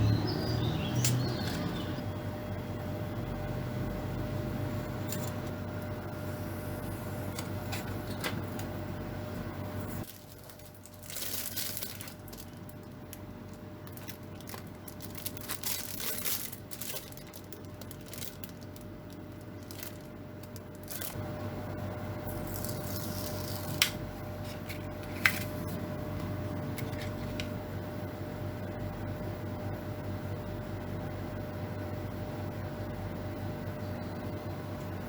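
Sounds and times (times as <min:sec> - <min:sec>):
rustling and crinkling sheet material: 0:09.8 - 0:21.2.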